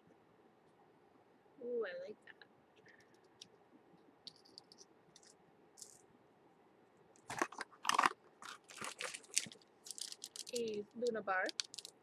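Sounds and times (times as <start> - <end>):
packaging crinkling: 4.3 - 6.0, 7.2 - 12.0.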